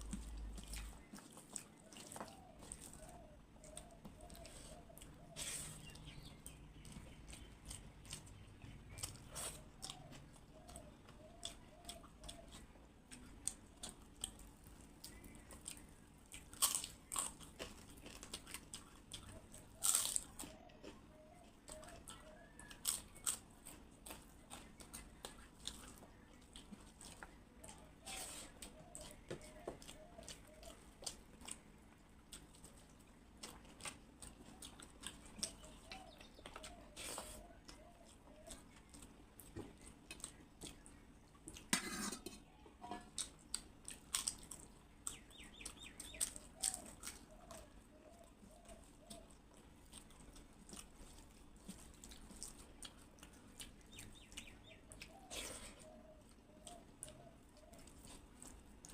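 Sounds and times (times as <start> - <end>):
person chewing food: 0.0 - 58.9
bird chirps: 45.1 - 49.3.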